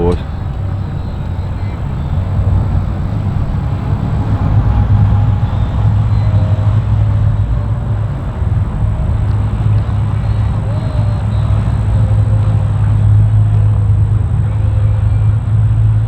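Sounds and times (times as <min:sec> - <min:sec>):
outboard engines idling: 0:00.0 - 0:16.0.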